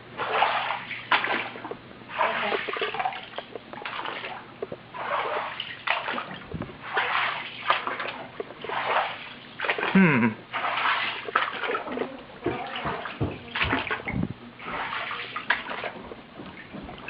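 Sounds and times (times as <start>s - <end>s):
water sloshing from wading: 0.0s - 17.0s.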